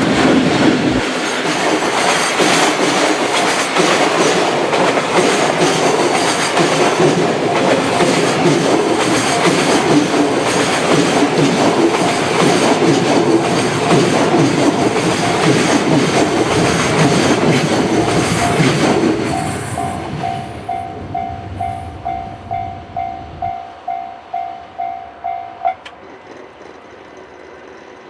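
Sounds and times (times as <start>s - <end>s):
train wagons clattering over rails: 0.0s - 28.0s
level crossing warning bell: 7.2s - 10.1s, 14.8s - 16.1s, 17.9s - 25.9s.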